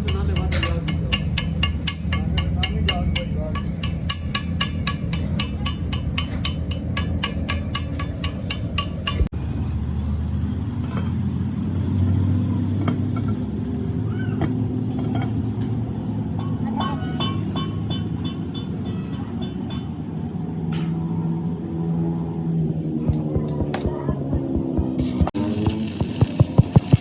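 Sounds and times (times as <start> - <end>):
rapid metallic knocks: 23.1 - 27.0
scattered clicks: 25.0 - 27.0.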